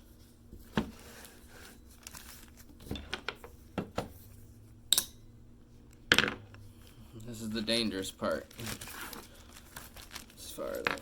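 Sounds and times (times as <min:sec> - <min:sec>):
faint crinkling: 0:08.2 - 0:10.9.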